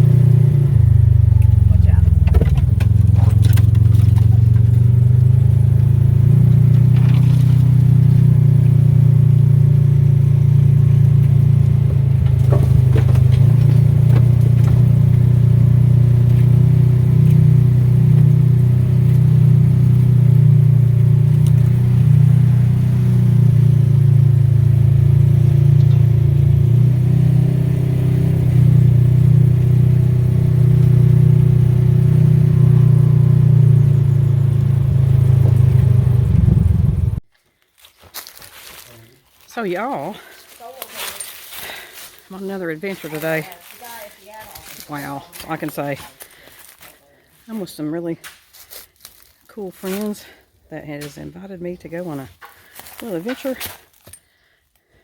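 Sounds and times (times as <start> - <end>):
vehicle engine droning: 0.0 - 37.3, 38.2 - 54.2
light knocks and rattles: 2.0 - 5.0, 11.3 - 15.3.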